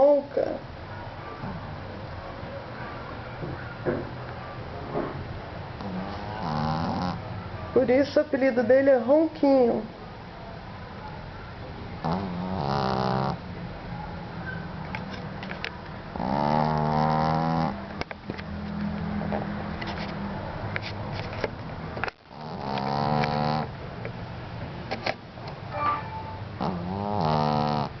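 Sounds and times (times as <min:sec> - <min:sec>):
pet snoring: 0:05.8 - 0:07.2, 0:12.0 - 0:13.4, 0:16.1 - 0:17.8, 0:22.3 - 0:23.7, 0:26.6 - 0:28.0.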